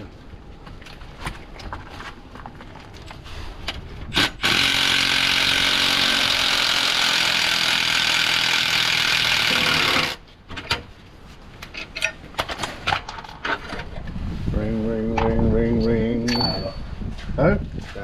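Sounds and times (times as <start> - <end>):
cordless power tool running: 4.3 - 10.2.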